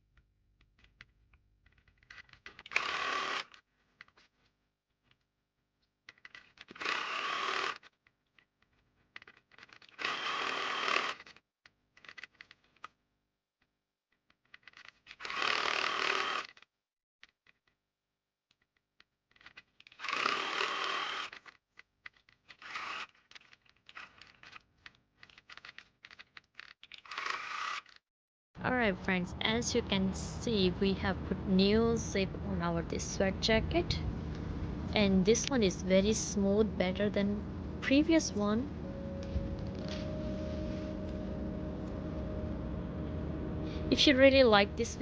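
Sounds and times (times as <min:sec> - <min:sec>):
sewing machine stitching: 0:02.5 - 0:03.6, 0:06.7 - 0:07.8, 0:09.8 - 0:11.3, 0:15.2 - 0:16.5, 0:19.9 - 0:21.4
fabric rustling: 0:38.8 - 0:42.5.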